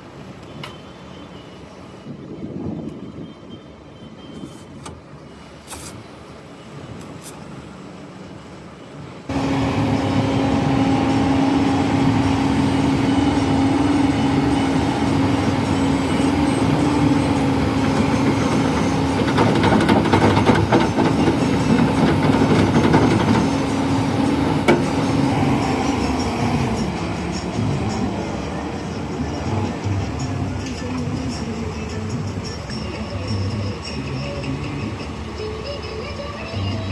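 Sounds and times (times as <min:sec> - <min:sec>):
diesel engine droning: 0:09.3 - 0:36.9.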